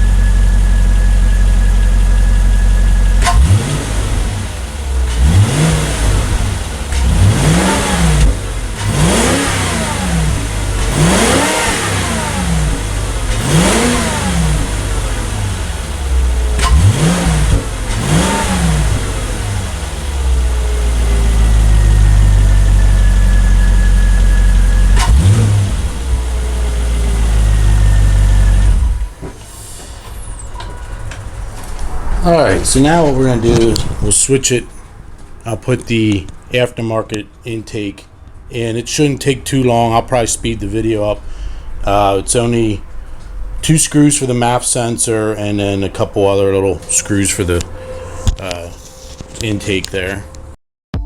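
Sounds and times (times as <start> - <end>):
car engine revving: 0.0 - 36.7, 38.5 - 50.6
car engine idling: 0.0 - 50.6.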